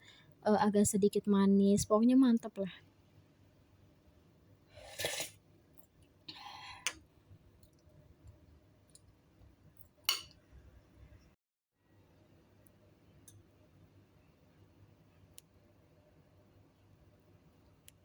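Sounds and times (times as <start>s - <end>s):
spoon scraping bowl: 4.7s - 5.4s.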